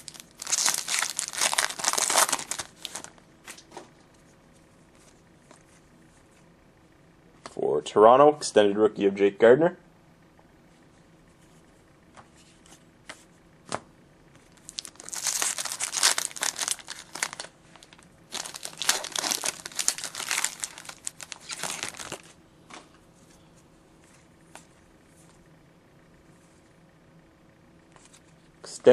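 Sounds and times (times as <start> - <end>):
foil wrapper tearing and crinkling: 0.0 - 3.2, 14.6 - 22.3.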